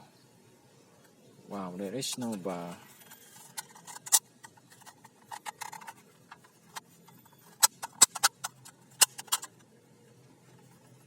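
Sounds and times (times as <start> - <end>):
hard plastic clicking: 3.4 - 9.7.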